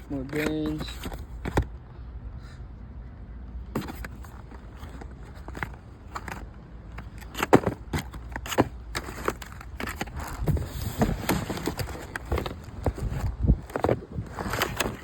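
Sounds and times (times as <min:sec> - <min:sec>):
parts clicking and knocking: 0:03.7 - 0:15.0
packaging rustling and crinkling: 0:03.8 - 0:15.0.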